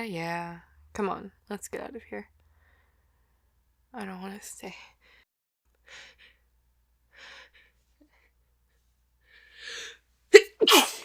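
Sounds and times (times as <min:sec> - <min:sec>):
woman sneezing: 0:10.3 - 0:11.0.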